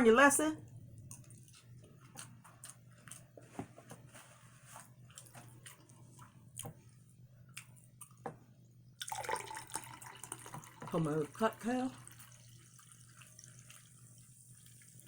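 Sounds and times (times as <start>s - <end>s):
wet chewing sounds: 0.7s - 8.2s.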